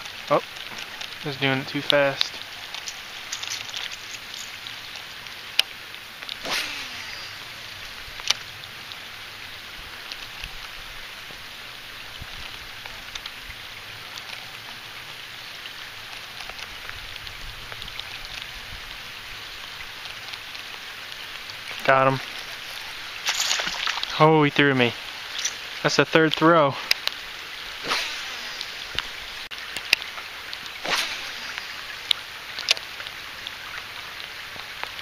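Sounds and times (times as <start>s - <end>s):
steady rain falling: 0.0s - 35.0s.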